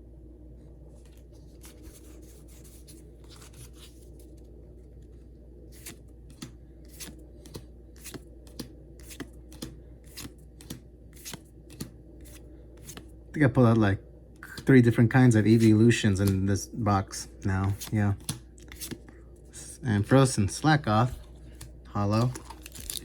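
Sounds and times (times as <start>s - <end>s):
low steady hum: 0.0s - 23.0s
cards snapping: 5.7s - 13.1s, 15.5s - 16.4s, 17.6s - 19.2s, 21.0s - 23.0s
foil pack tearing: 22.2s - 23.0s.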